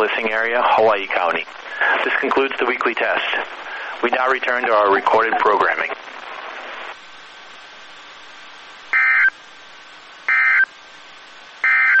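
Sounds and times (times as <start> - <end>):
radio hiss: 0.0 - 12.0
electronic data warble: 9.0 - 9.4, 10.3 - 10.7, 11.6 - 12.0.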